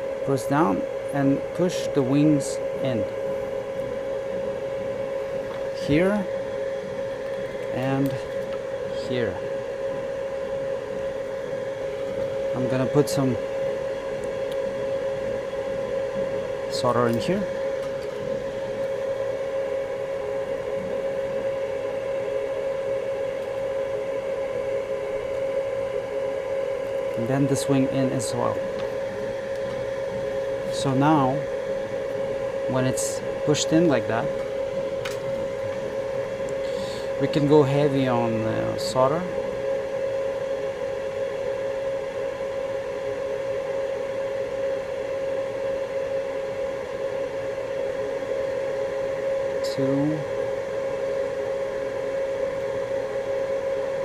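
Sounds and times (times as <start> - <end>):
electric fan whirring: 0.0 - 54.0
steady machine hum: 0.0 - 54.0.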